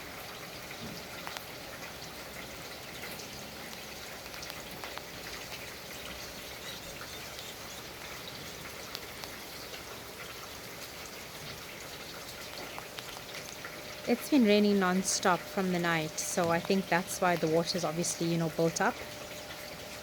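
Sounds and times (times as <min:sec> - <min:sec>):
raindrops ticking close by: 0:00.0 - 0:20.0
heavy rain falling: 0:07.7 - 0:20.0.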